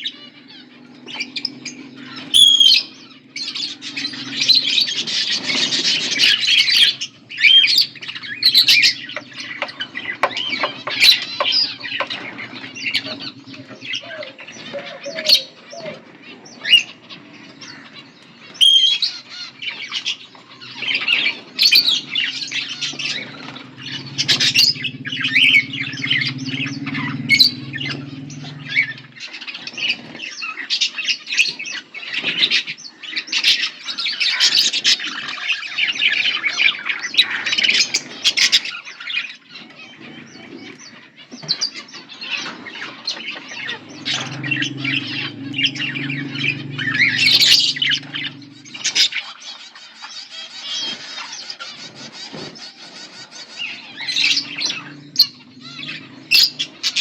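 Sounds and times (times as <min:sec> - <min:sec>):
budgerigars chattering and chirping: 0:00.0 - 0:57.0
low steady hum: 0:20.6 - 0:29.4, 0:43.3 - 0:49.2.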